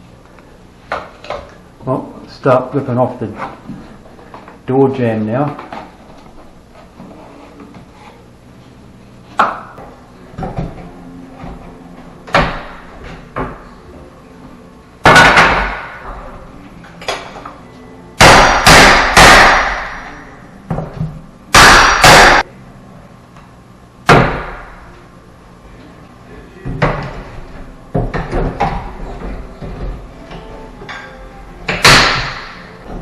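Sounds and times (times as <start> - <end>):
hammer blows on wood: 21.5 - 22.4.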